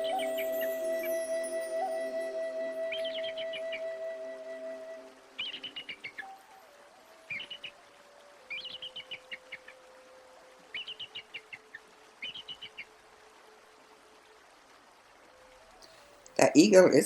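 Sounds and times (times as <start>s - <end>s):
held musical tone: 0.0s - 5.8s
bird chirping: 0.0s - 6.6s, 7.3s - 7.7s, 8.5s - 9.7s, 10.7s - 12.8s.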